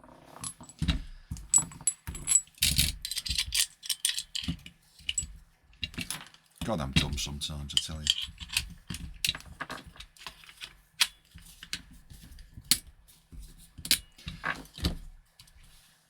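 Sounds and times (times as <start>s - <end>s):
plastic and metal parts clicking: 1.9s - 11.8s.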